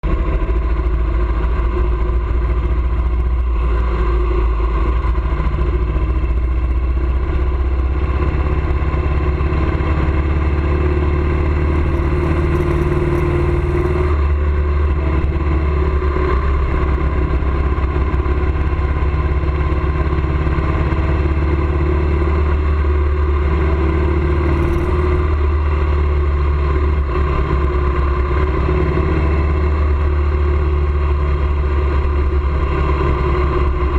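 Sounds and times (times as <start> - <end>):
road noise: 0.0 - 33.9
vehicle engine running: 0.0 - 33.9.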